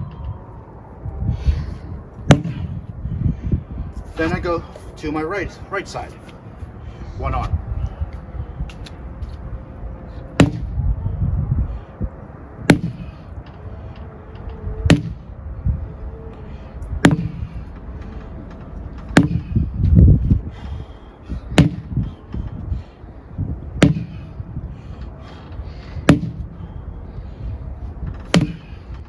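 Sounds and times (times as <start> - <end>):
wind rumble on microphone: 0.0 - 29.0
sledgehammer striking a tire: 2.3 - 2.8, 10.4 - 10.8, 12.6 - 13.3, 14.8 - 15.3, 17.0 - 17.7, 19.1 - 19.8, 21.5 - 22.2, 23.8 - 24.4, 26.0 - 26.6, 28.2 - 28.8.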